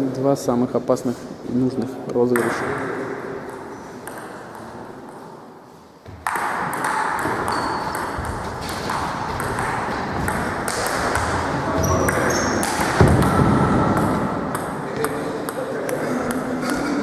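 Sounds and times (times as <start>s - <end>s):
dense hall noise: 0.0s - 17.0s
table tennis ball hits: 2.3s - 2.9s, 3.5s - 5.2s, 6.1s - 16.9s.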